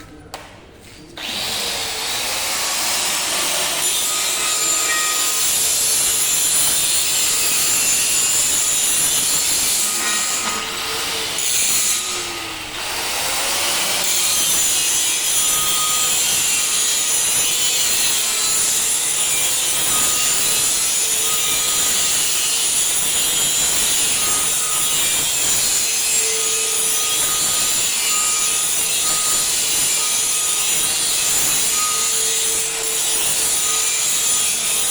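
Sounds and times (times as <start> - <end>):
angle grinder grinding steel: 1.2 - 34.9.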